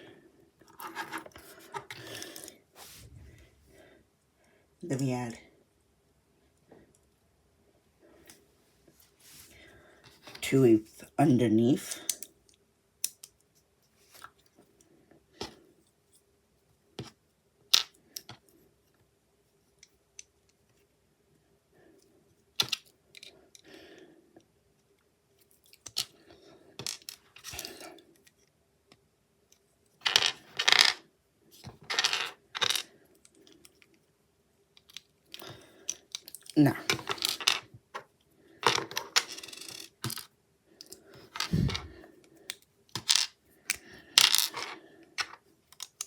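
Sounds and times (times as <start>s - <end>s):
plastic bricks clicking: 44.2s - 46.0s.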